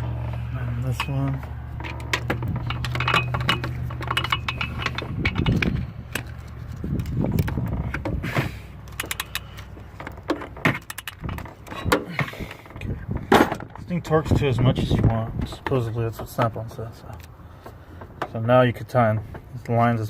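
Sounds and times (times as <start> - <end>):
ratchet clicking on metal fittings: 9.0 - 9.6.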